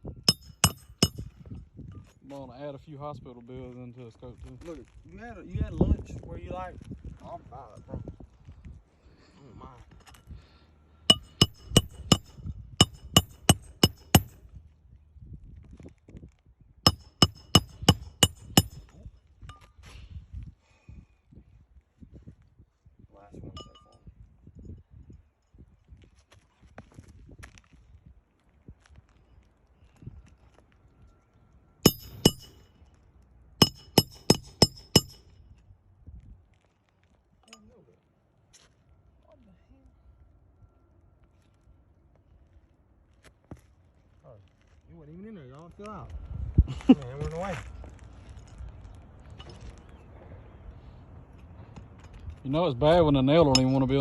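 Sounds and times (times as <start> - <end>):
hammer striking metal: 0.3 - 1.3, 11.1 - 14.4, 16.9 - 18.9, 31.9 - 32.7, 33.6 - 35.2.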